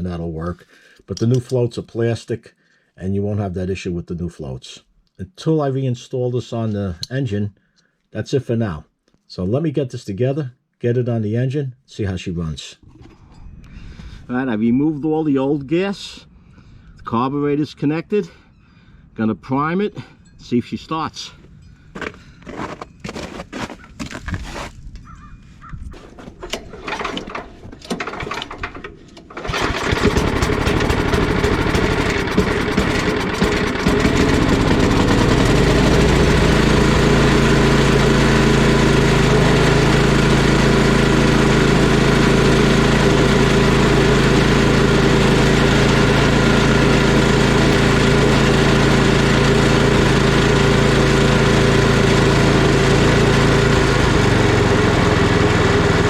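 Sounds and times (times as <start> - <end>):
clicks and knocks while priming: 26.1 - 30.4
small engine running: 27.9 - 56.0.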